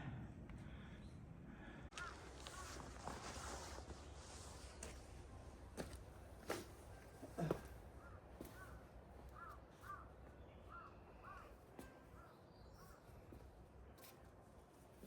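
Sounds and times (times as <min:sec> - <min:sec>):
bird calling faintly: 0:08.0 - 0:13.4.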